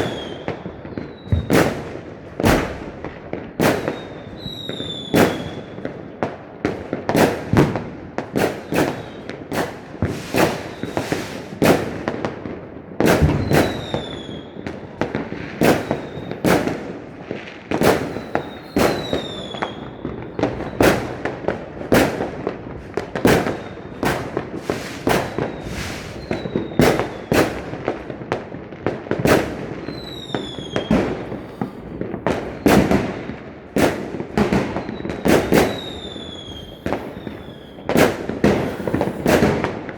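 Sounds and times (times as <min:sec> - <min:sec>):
fireworks banging: 0:00.0 - 0:05.7, 0:06.7 - 0:39.9
firework whistle falling in pitch: 0:18.0 - 0:20.0, 0:24.7 - 0:27.3, 0:35.6 - 0:37.9.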